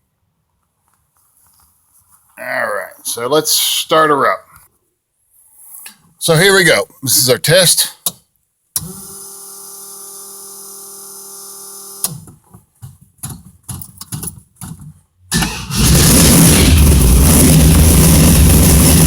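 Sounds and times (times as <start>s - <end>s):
loud engine running: 15.4s - 19.0s
electric hum: 15.7s - 19.0s.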